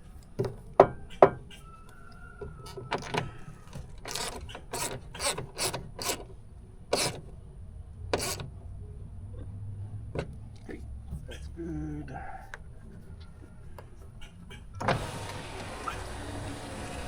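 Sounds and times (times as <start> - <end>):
ratchet rasping: 2.5 - 7.3, 8.1 - 8.5.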